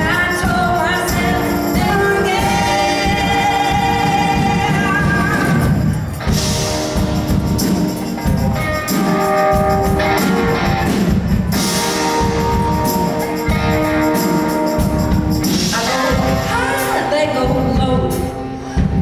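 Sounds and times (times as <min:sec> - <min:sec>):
tambourine: 0:00.0 - 0:16.8
guitar: 0:00.0 - 0:19.0
live band music: 0:00.0 - 0:19.0.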